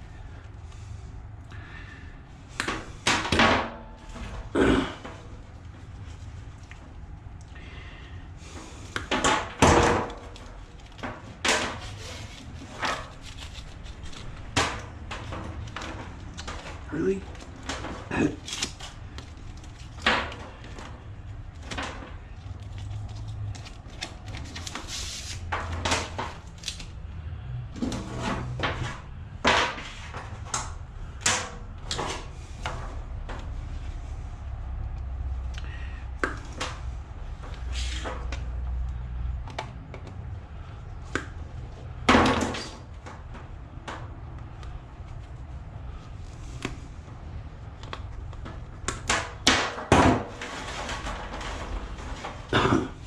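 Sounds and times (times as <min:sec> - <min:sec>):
scrap items knocking and rattling: 0:08.5 - 0:26.6, 0:27.6 - 0:34.1, 0:36.2 - 0:44.9, 0:45.9 - 0:53.0
steady low rumble: 0:42.9 - 0:48.9.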